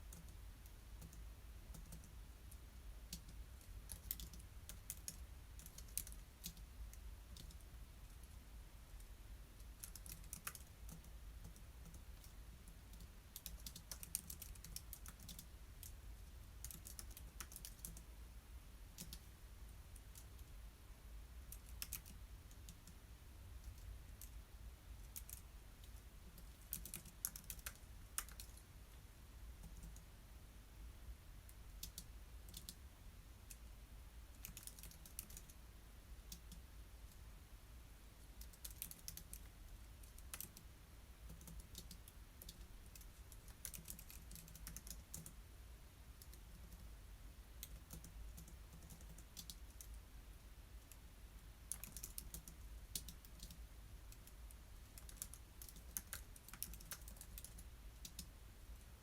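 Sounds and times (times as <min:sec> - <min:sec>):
typing on keyboard: 0:00.0 - 0:00.4, 0:01.0 - 0:02.2, 0:03.1 - 0:07.6, 0:09.6 - 0:18.0, 0:18.9 - 0:19.3, 0:21.5 - 0:23.0, 0:25.1 - 0:28.6, 0:29.6 - 0:30.1, 0:31.8 - 0:32.8, 0:34.4 - 0:35.6, 0:38.4 - 0:40.6, 0:41.3 - 0:45.4, 0:47.6 - 0:50.0, 0:51.7 - 0:54.4, 0:55.0 - 0:58.3
faint low hum: 0:00.0 - 0:59.0.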